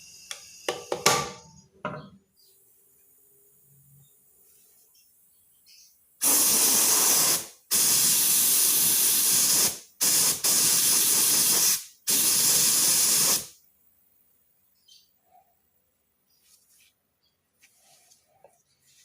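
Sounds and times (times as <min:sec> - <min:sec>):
compressed air hissing from nozzle: 0:06.2 - 0:13.6.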